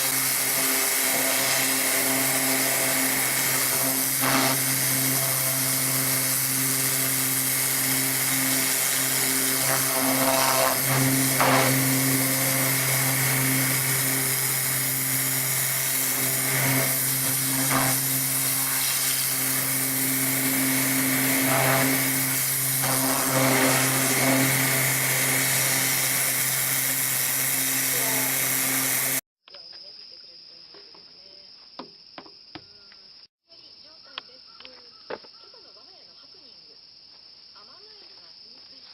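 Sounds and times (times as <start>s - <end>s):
loud rasping: 0.0s - 29.2s
woodworking machine humming: 0.0s - 29.2s.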